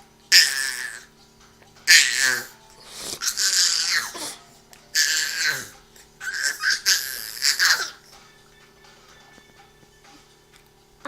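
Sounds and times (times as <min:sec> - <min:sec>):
baby breathy squealing: 0:03.1 - 0:04.4, 0:05.0 - 0:08.0.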